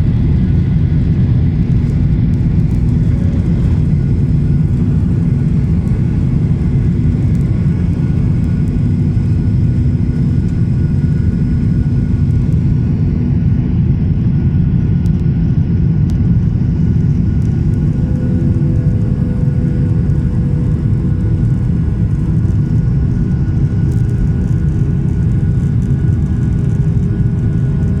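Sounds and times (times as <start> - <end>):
aircraft engine drone: 0.0 - 28.0.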